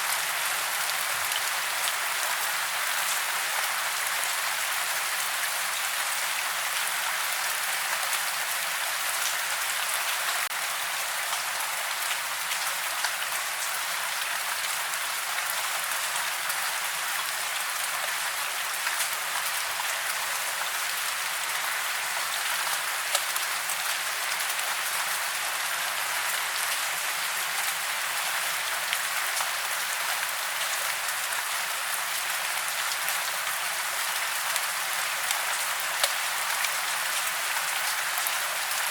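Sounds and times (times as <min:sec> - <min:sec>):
raindrop ticks: 0:23.1 - 0:23.5.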